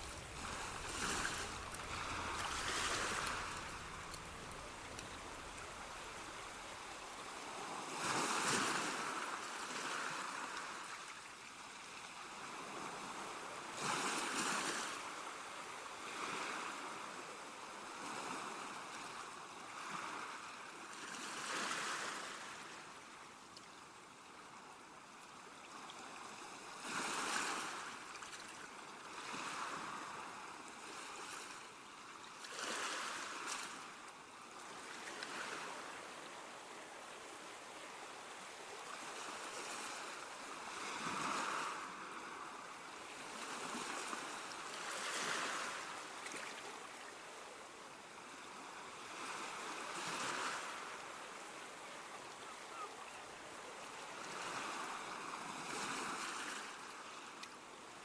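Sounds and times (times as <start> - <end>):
water hissing: 0.0 - 7.6.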